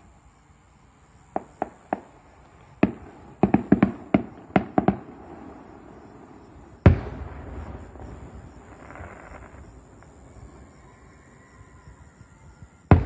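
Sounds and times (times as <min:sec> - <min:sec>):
fireworks bangs: 0:01.3 - 0:13.0
fireworks boom with rumbling echo: 0:02.8 - 0:13.0.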